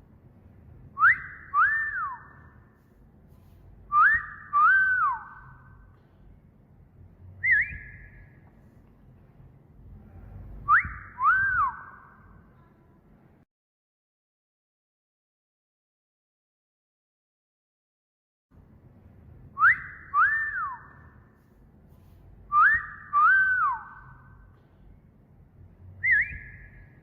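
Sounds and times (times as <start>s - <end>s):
short rising whistle chirp: 1.0s - 2.7s, 3.9s - 6.0s, 7.4s - 8.4s, 10.6s - 12.3s, 19.6s - 21.1s, 22.5s - 24.5s, 26.0s - 27.0s
wolf whistle: 1.0s - 2.7s, 3.9s - 5.9s, 7.4s - 8.4s, 10.6s - 12.3s, 19.6s - 21.2s, 22.5s - 24.4s, 26.0s - 27.0s.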